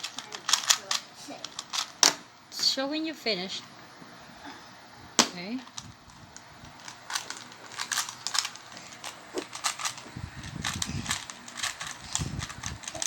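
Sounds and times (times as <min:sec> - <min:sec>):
puzzle cube clicking: 0:06.8 - 0:13.0.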